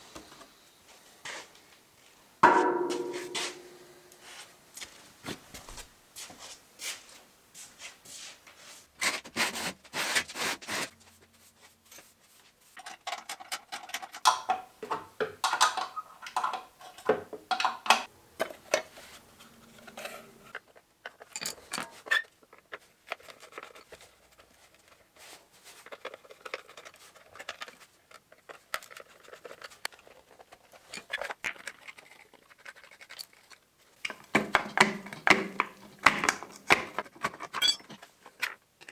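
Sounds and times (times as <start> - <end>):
tools scraping and clicking: 15.4 - 23.9, 28.7 - 38.9.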